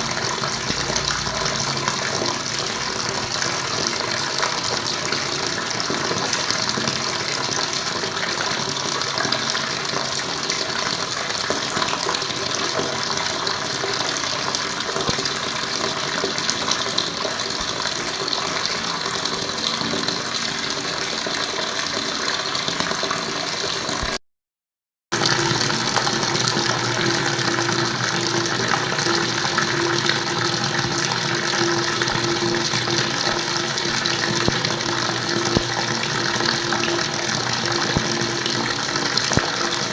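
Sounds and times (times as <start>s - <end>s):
water rushing: 25.2s - 39.9s.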